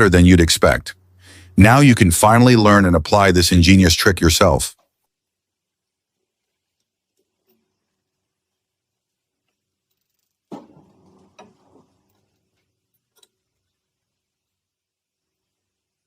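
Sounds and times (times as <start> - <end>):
clattering handling noise: 9.9 - 13.6.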